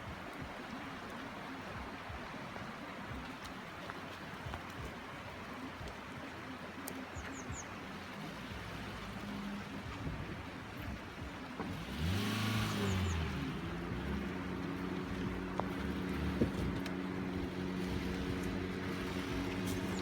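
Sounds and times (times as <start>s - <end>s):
constant rushing background: 0.0s - 20.0s
vehicle engine running: 10.9s - 20.0s.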